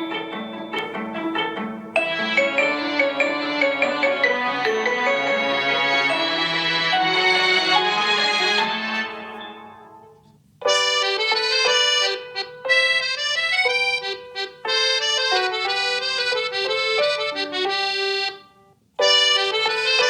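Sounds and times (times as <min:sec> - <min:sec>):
phone ringtone melody: 0:00.0 - 0:10.0.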